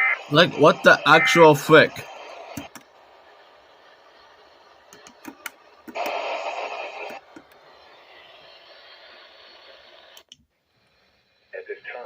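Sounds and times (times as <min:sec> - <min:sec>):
burst of radio static: 0:00.0 - 0:02.6, 0:05.8 - 0:10.1
low radio hiss: 0:00.0 - 0:12.0
sharp clicks: 0:02.5 - 0:02.9, 0:04.9 - 0:06.2.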